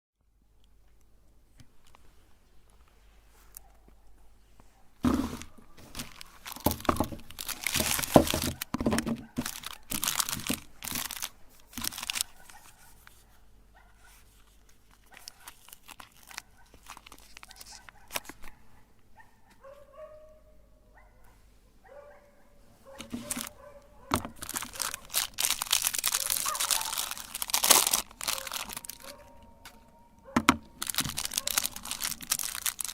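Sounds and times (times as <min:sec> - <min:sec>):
meat grinder crunching soap: 0:05.1 - 0:12.6, 0:15.2 - 0:18.4, 0:24.2 - 0:29.2, 0:30.5 - 0:32.9.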